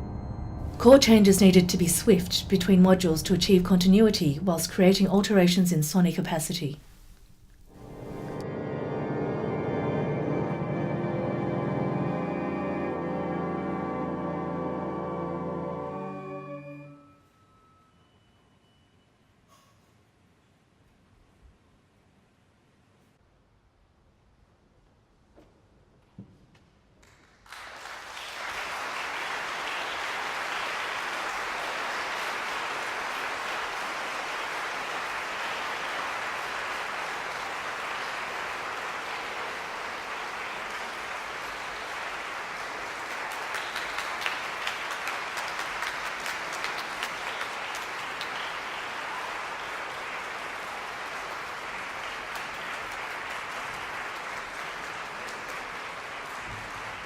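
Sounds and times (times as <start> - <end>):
audience applauding: 27.2 - 57.0.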